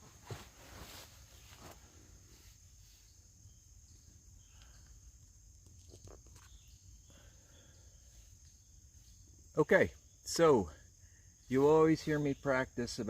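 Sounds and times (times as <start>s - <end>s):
faint ticks: 4.5s - 6.7s.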